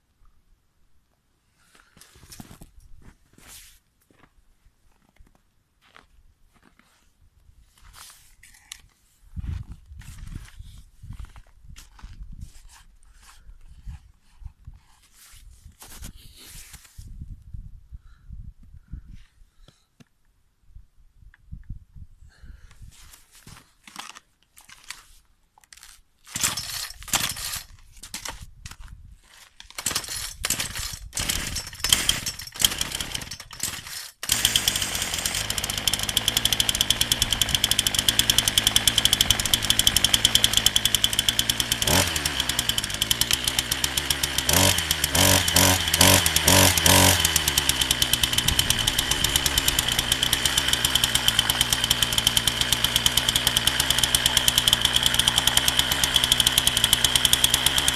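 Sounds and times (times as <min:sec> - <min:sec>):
starter cord pulls: 0:26.3 - 0:28.8, 0:29.6 - 0:57.9
chainsaw engine running: 0:26.4 - 0:28.3, 0:29.8 - 0:57.9.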